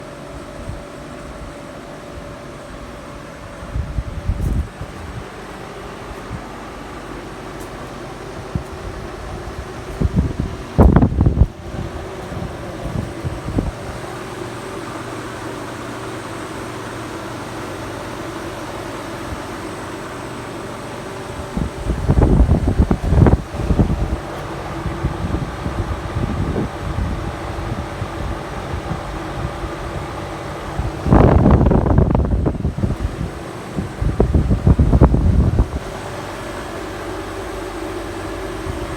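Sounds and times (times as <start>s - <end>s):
heat pump humming: 0.0s - 38.9s
wind buffeting microphone: 2.2s - 15.3s, 21.2s - 36.1s.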